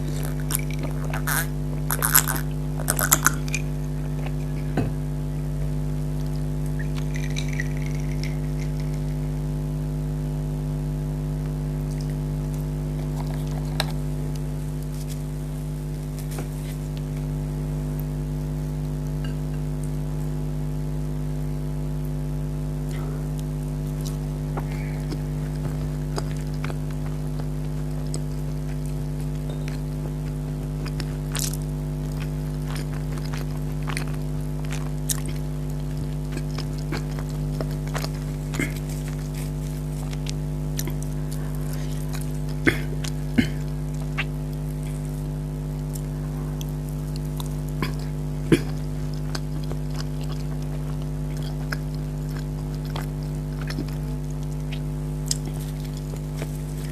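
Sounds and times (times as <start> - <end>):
steady electrical hum: 0.0 - 56.9
chewing and food handling clicks: 45.8 - 56.6.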